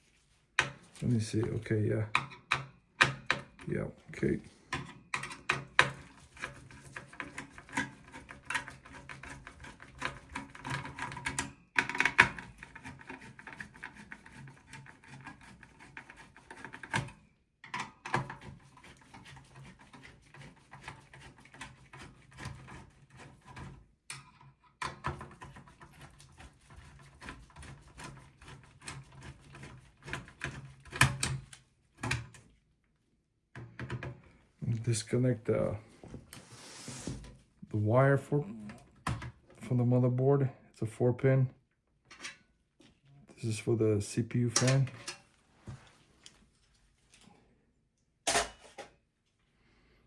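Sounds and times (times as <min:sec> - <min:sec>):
screwdriver clicks and rattles on metal: 0:10.3 - 0:12.5.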